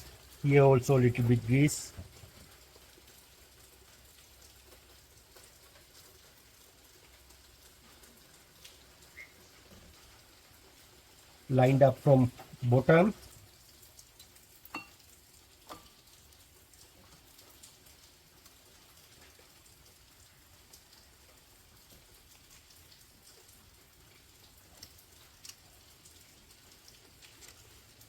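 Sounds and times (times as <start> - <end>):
rain patter: 0.0 - 28.0
light clink: 14.7 - 15.0.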